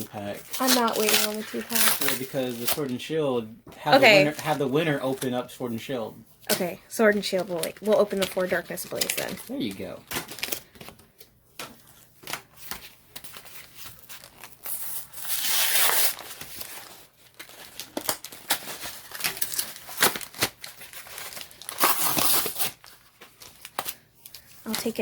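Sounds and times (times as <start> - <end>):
packaging tearing: 0.0 - 3.0, 7.6 - 10.8, 13.2 - 25.0
plastic and foil crinkling: 0.0 - 3.1, 6.5 - 25.0.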